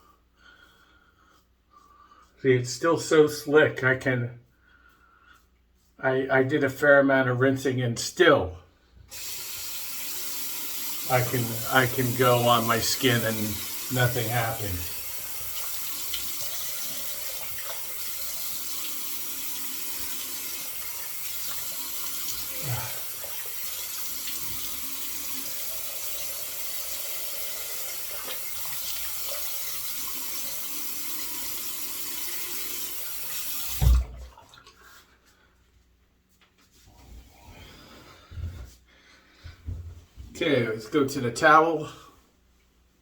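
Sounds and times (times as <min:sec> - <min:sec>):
tap running into sink: 0:33.6 - 0:34.2.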